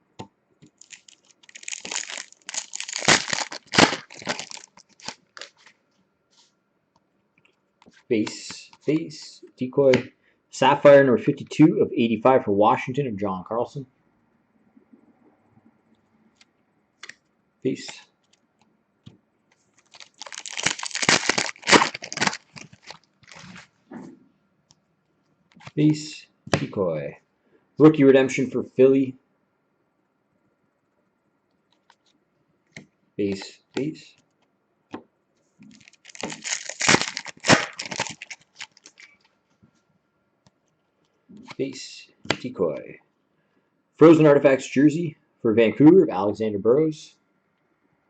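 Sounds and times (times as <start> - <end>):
foil wrapper tearing and crinkling: 0.8 - 5.7, 19.8 - 23.7, 35.7 - 39.2.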